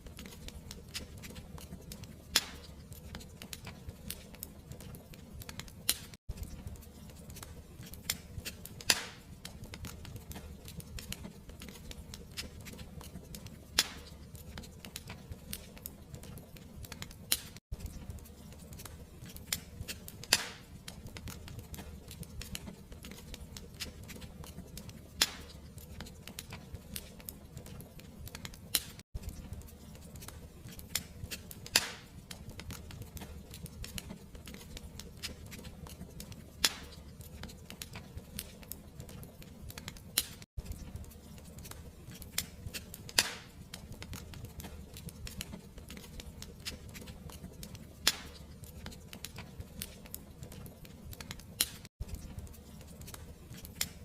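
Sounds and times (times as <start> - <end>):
wood fire crackling: 0.0 - 54.0
sharp fire pops: 2.3 - 4.2, 7.4 - 11.2, 13.7 - 14.3, 18.7 - 22.6, 24.8 - 25.7, 30.3 - 34.0, 36.6 - 37.1, 41.6 - 45.4, 48.0 - 48.4.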